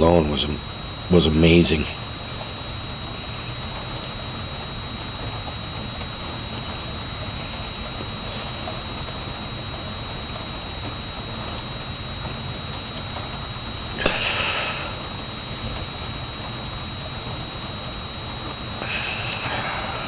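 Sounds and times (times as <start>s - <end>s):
rain patter: 0.0s - 19.6s
short hiss: 14.0s - 14.9s.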